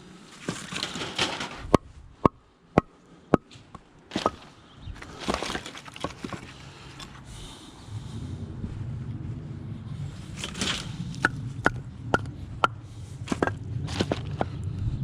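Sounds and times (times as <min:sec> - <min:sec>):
wooden logs clacking: 0:00.3 - 0:07.2, 0:10.4 - 0:14.7.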